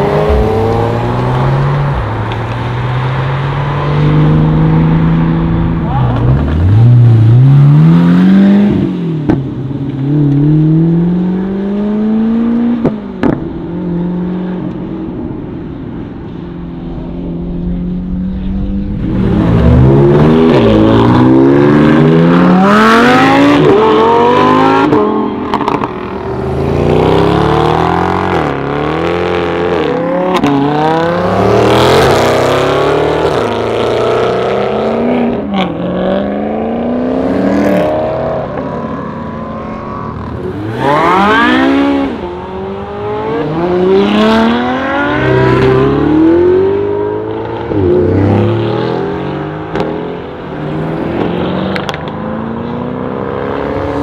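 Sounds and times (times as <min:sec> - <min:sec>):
car engines accelerating hard: 0:00.0 - 0:54.0.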